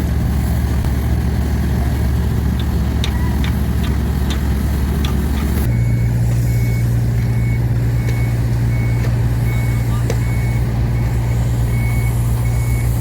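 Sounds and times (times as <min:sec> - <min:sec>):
diesel construction vehicle running: 0:00.0 - 0:13.0
reversing alarm beeping: 0:05.6 - 0:13.0.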